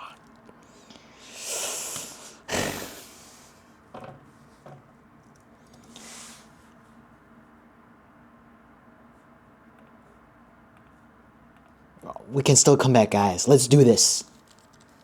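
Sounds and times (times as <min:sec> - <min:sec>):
person breathing heavily: 0:00.0 - 0:03.6
breath blowing on microphone: 0:01.1 - 0:03.6
small clicks: 0:14.3 - 0:15.0.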